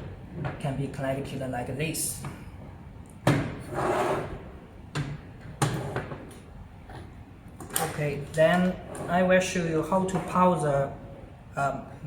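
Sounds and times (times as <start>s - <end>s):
sliding scrape: 3.6s - 4.4s.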